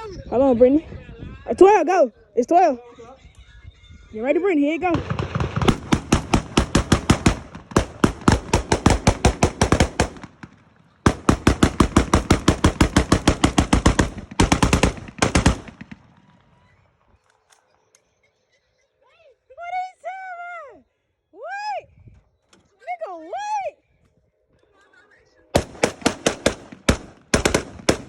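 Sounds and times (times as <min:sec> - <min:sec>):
rapid gunfire: 0:04.8 - 0:16.4, 0:25.6 - 0:28.0.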